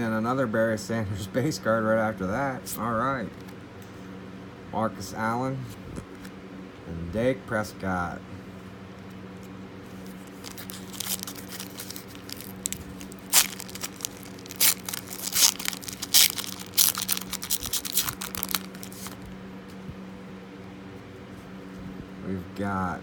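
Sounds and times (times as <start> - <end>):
foil wrapper tearing and crinkling: 10.0 - 19.4.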